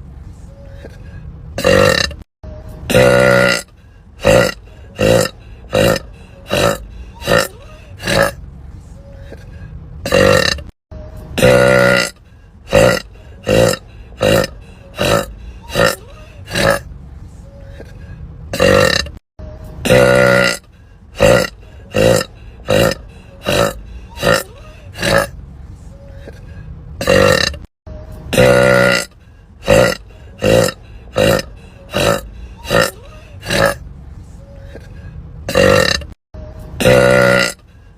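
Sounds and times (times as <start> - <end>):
woman burping: 1.6 - 2.2, 2.9 - 8.4, 10.0 - 10.7, 11.4 - 12.1, 12.7 - 16.8, 18.6 - 19.2, 19.8 - 20.6, 21.2 - 25.3, 27.0 - 27.7, 28.3 - 29.1, 29.7 - 33.8, 35.5 - 36.2, 36.8 - 37.6.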